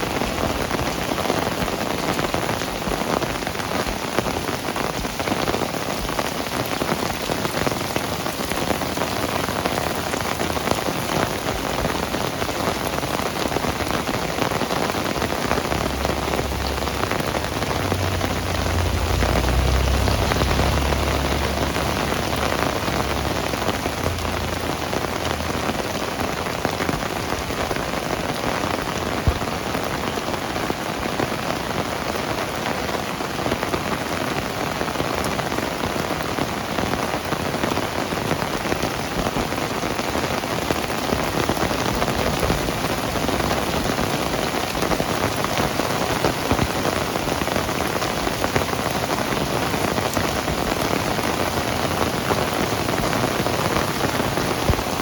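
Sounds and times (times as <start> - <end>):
heavy rain: 0.0 - 55.0
low rumble: 15.2 - 26.2.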